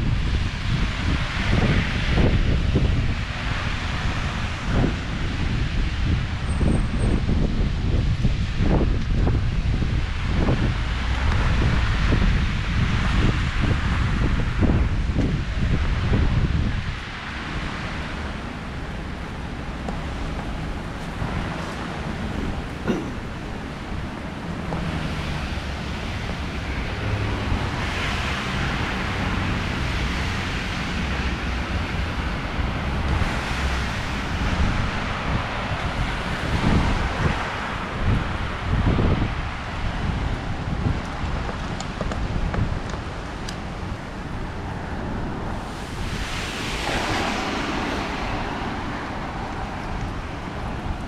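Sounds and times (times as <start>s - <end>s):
gusty wind on microphone: 0.0s - 51.0s
rushing hiss: 45.5s - 50.3s.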